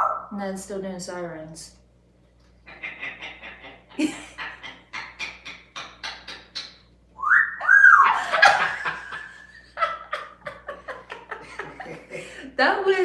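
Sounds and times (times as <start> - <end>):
parrot mimicking a laugh: 2.6 - 6.8
parrot whistle gliding up: 7.2 - 8.2.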